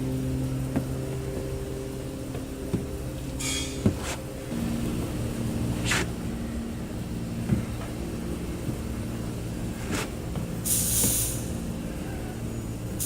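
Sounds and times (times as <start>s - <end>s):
low mechanical hum: 0.0s - 13.0s.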